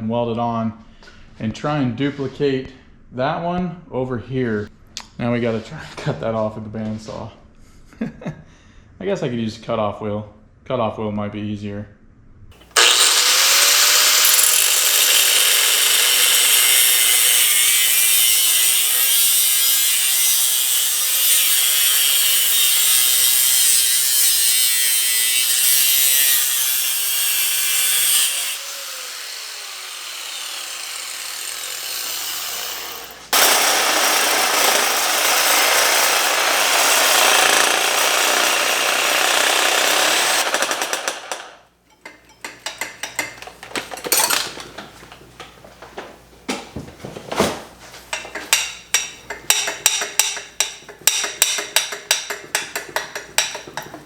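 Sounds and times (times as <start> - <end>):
cutoff wheel grinding metal: 12.6 - 44.4, 48.2 - 54.0.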